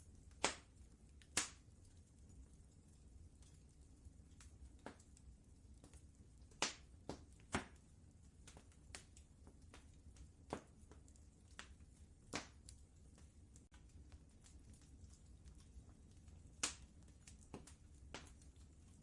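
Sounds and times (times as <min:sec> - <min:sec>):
faint low rumble: 0:00.0 - 0:19.0
wood fire crackling: 0:00.0 - 0:19.0
sharp pops: 0:16.6 - 0:16.8.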